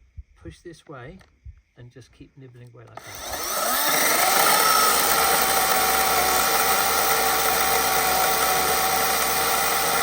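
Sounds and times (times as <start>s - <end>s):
electric chainsaw whining: 3.0s - 10.0s.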